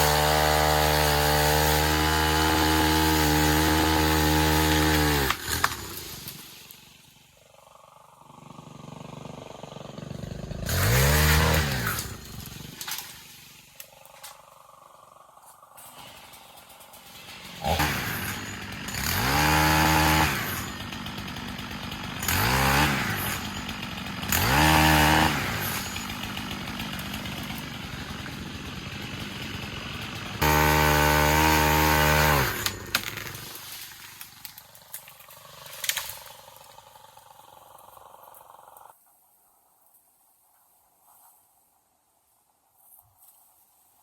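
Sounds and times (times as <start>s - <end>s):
pole saw motor revving: 0.0s - 7.2s, 7.9s - 14.4s, 15.8s - 33.7s.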